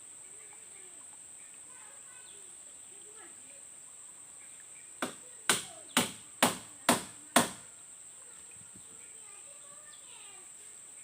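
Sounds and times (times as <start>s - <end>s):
sharp tool strikes: 5.0s - 7.6s.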